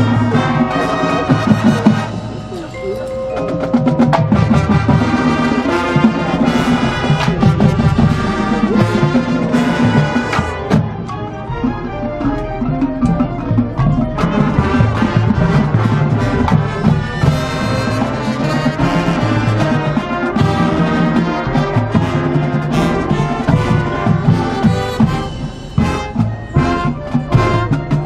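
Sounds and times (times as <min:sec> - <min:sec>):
drum strikes: 0:00.0 - 0:28.0
mallet-like notes: 0:00.0 - 0:28.0
marching band playing: 0:00.0 - 0:28.0.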